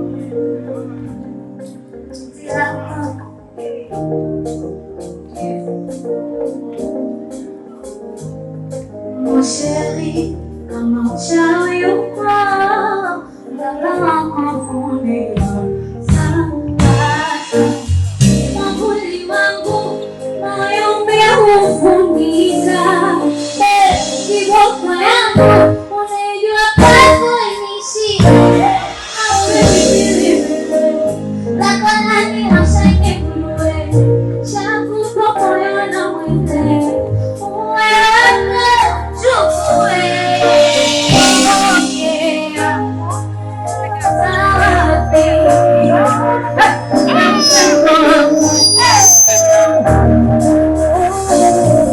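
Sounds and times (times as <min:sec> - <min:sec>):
full band playing: 0:00.0 - 0:51.9
woman singing live: 0:09.1 - 0:49.9.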